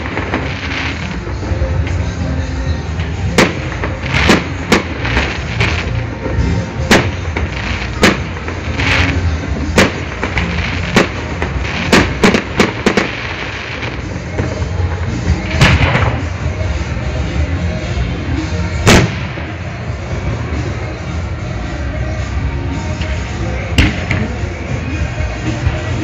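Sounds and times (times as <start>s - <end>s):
fireworks bangs: 0.0s - 17.6s, 18.2s - 21.1s.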